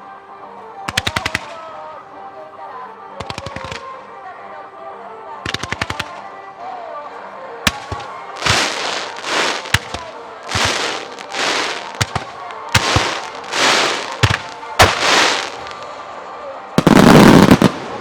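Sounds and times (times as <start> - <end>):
fireworks bursting: 7.7 - 16.0, 16.8 - 18.0.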